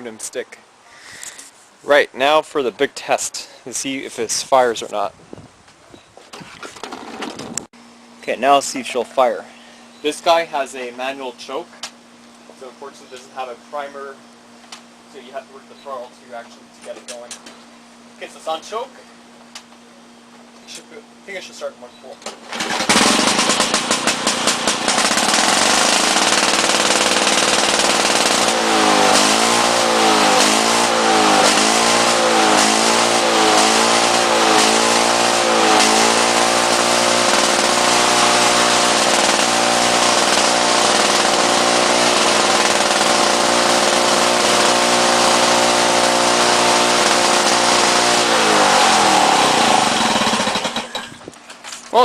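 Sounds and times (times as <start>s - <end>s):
two-stroke mower engine running: 6.6s - 10.5s, 22.3s - 52.0s.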